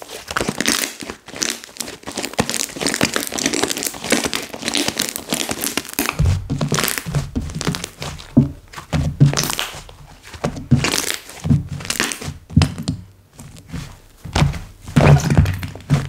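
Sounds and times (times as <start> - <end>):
slime squishing: 0.0 - 16.0
soft thuds: 6.1 - 16.0.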